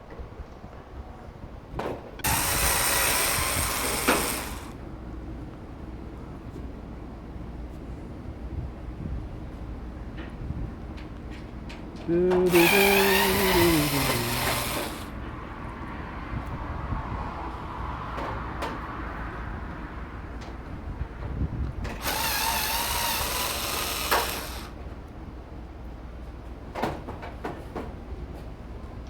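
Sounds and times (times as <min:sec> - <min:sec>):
cordless drill running: 0:02.2 - 0:04.8, 0:12.5 - 0:15.1, 0:22.0 - 0:24.8.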